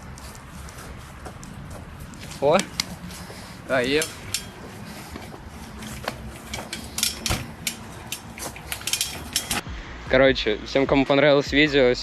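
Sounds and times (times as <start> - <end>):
sharp clicks and clinks: 3.9 - 4.6, 5.8 - 9.6.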